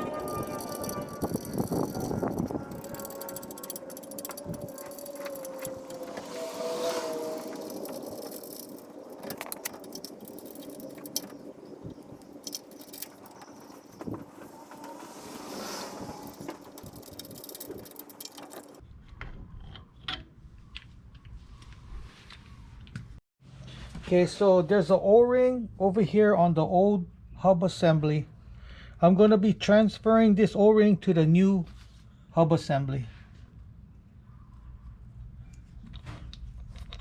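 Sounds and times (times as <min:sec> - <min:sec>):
metallic tool clicks and clinks: 0:00.0 - 0:18.8
wavering tone: 0:00.0 - 0:18.8.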